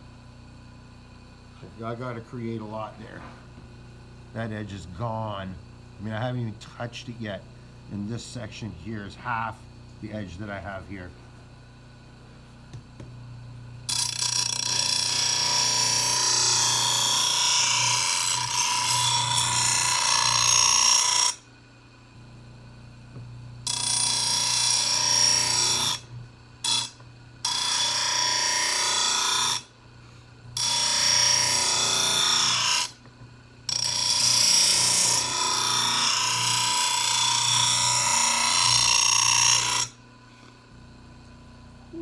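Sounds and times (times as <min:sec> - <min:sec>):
grinder grinding steel blade: 0:13.9 - 0:21.4, 0:23.7 - 0:29.7, 0:30.6 - 0:33.0, 0:33.7 - 0:40.6.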